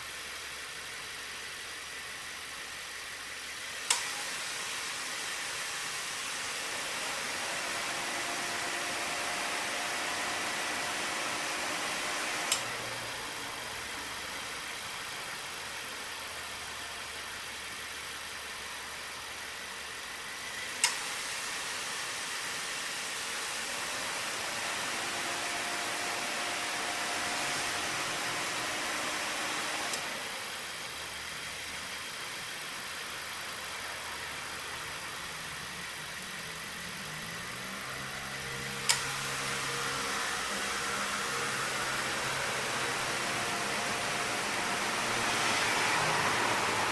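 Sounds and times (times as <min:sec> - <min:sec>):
air conditioning hiss: 0:00.0 - 0:46.9
car engine idling: 0:00.0 - 0:46.9
compressor clutch clicks: 0:03.8 - 0:04.3, 0:09.3 - 0:12.8, 0:20.7 - 0:21.2.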